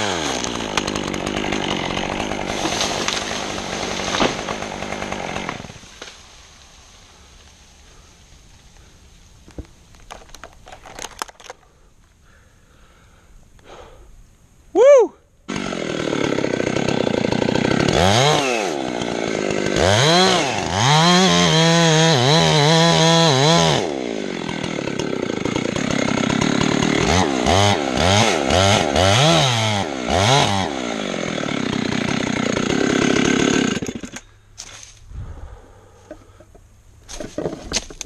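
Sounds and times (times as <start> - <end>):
chainsaw engine revving: 0.0 - 6.1, 15.5 - 34.4.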